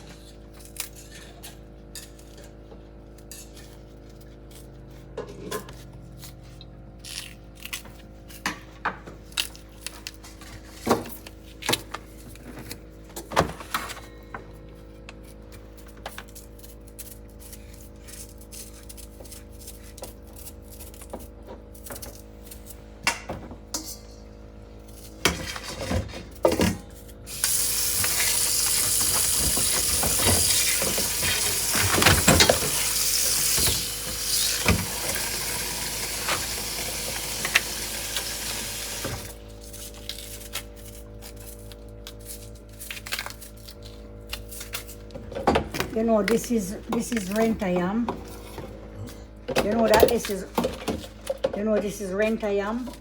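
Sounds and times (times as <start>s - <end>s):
utensils clattering: 25.3s - 39.3s, 49.5s - 53.0s
food sizzling in a pot: 27.3s - 39.2s.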